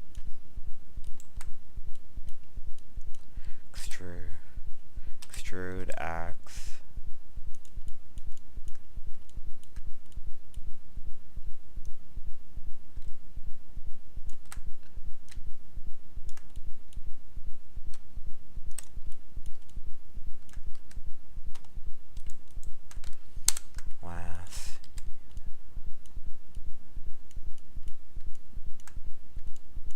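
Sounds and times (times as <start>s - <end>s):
steady low hum: 0.0s - 29.9s
computer keyboard keys clicking: 18.7s - 19.8s.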